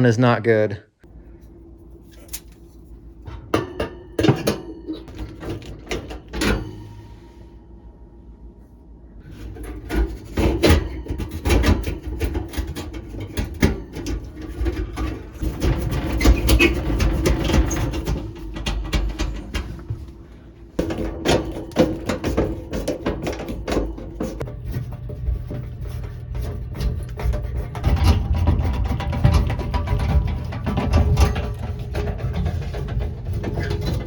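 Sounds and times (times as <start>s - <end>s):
faint steady hum: 0.0s - 11.4s
objects clattering and rubbing: 1.4s - 7.6s, 9.2s - 34.0s.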